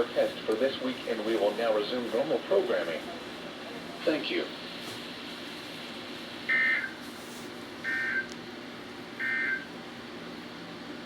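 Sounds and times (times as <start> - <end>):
steady radio hiss: 0.0 - 8.3.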